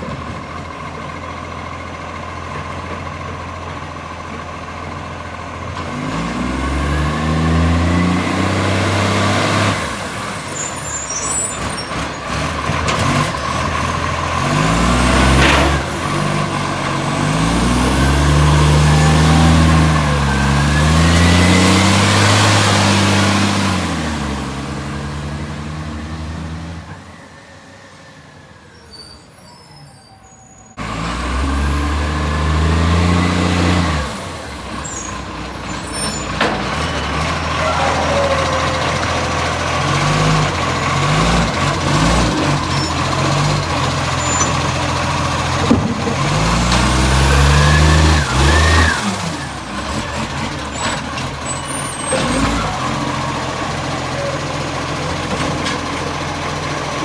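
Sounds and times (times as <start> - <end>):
diesel truck engine revving: 0.0 - 57.0.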